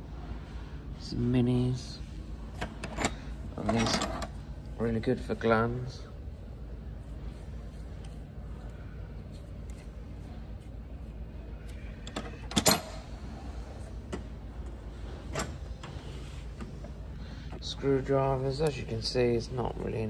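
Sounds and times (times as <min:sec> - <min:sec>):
steady low hum: 0:00.0 - 0:20.0
metal tools clicking and clanking: 0:02.6 - 0:04.4, 0:12.0 - 0:13.1.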